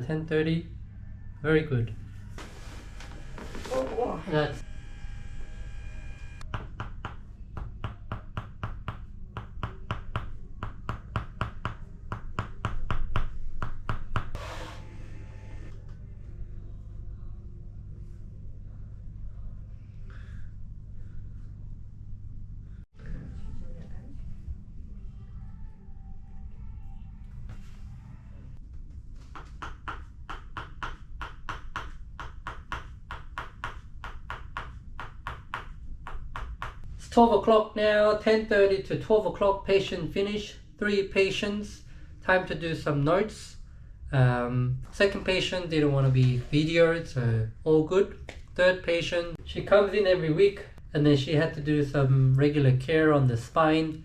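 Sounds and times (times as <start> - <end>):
wooden mallet tapping wooden wedge: 29.4 - 36.8.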